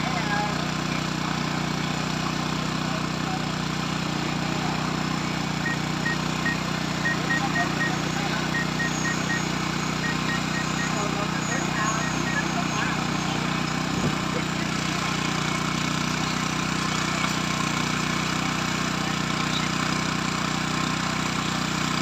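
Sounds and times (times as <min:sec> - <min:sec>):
drone rotors humming: 0:04.6 - 0:17.5.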